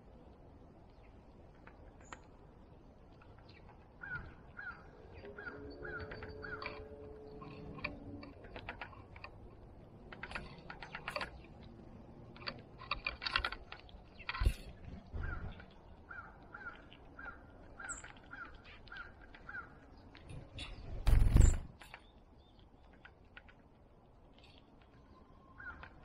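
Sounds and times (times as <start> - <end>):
birds calling: 0.8 - 23.4, 24.2 - 26.0.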